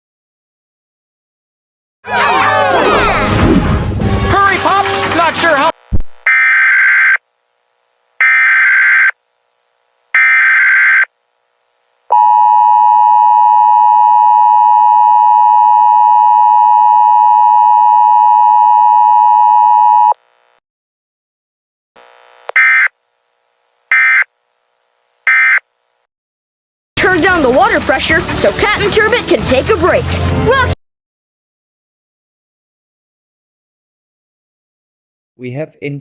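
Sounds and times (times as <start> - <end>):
screechy data-header tones: 6.2 - 7.2, 8.2 - 9.2, 10.2 - 11.1, 22.6 - 22.9, 23.9 - 24.3.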